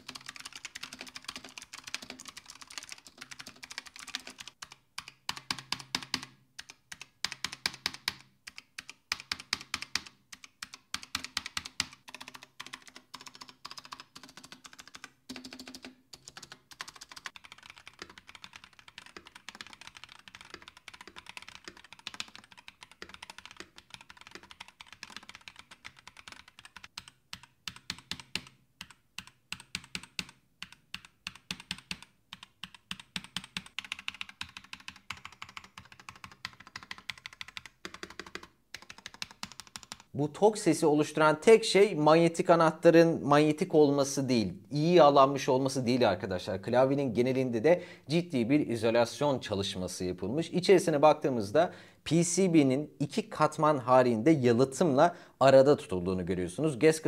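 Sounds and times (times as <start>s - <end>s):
fast keyboard typing: 0.0s - 40.1s.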